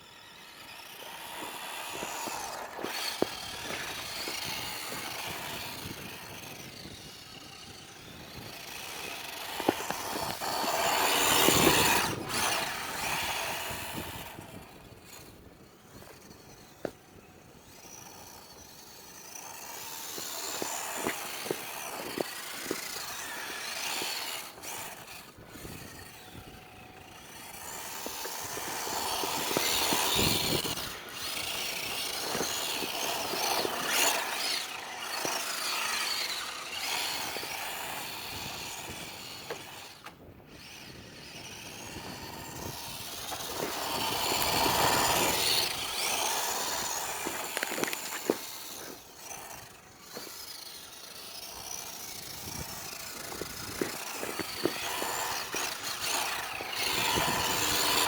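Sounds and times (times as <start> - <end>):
toy car electric motor whine: 0.0 - 58.0.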